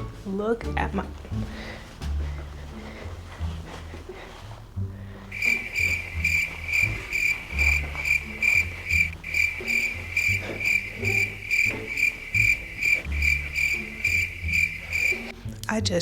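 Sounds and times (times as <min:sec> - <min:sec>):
low tones: 0:05.2 - 0:15.3
crickets chirping: 0:05.3 - 0:15.3.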